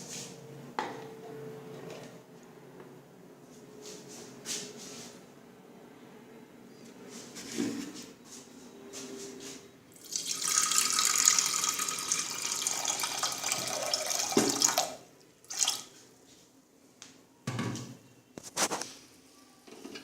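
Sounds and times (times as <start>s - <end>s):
water pouring into a container: 10.0s - 15.9s.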